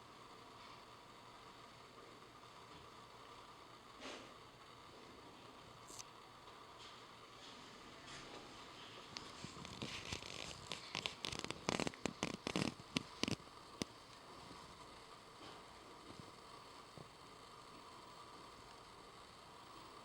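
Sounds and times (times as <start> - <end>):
sharp clicks and crackles: 9.1 - 14.2.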